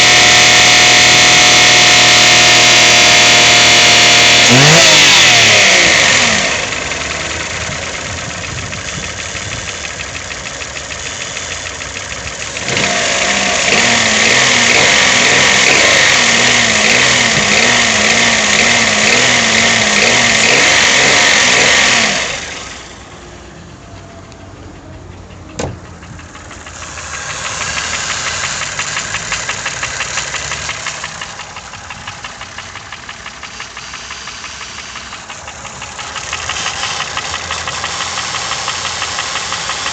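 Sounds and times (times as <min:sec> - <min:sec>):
car engine running with knock: 0:00.0 - 0:39.9.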